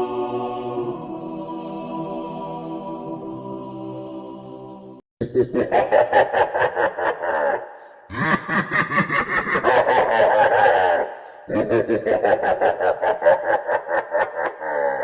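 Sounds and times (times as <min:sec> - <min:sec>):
choir chord: 0:00.0 - 0:05.0
hearty laughter: 0:05.2 - 0:15.0.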